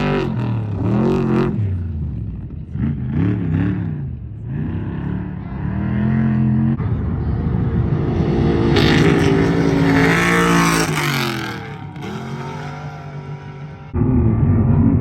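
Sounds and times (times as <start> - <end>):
race truck engine passing: 4.7 - 15.0.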